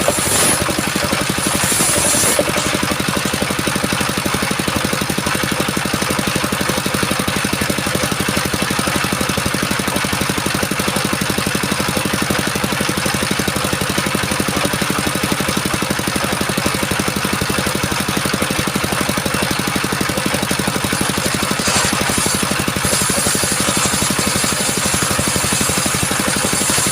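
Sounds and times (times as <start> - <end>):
bright hiss: 0.0 - 0.7, 1.4 - 2.7
diesel engine running steadily: 0.0 - 26.9.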